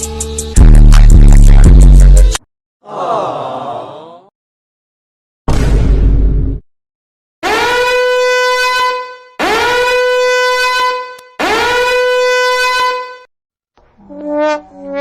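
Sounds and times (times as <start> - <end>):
long horn blasts: 7.4 - 13.3.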